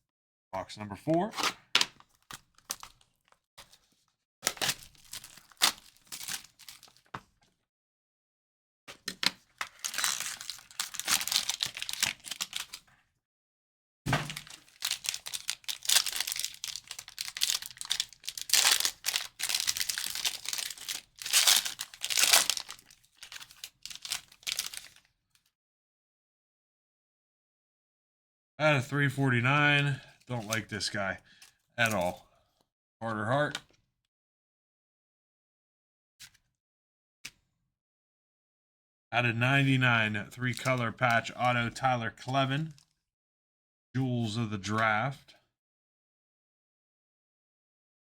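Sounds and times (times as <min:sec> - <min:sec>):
plastic wrapping crinkling: 0:04.5 - 0:07.1, 0:09.6 - 0:12.8, 0:14.3 - 0:25.0.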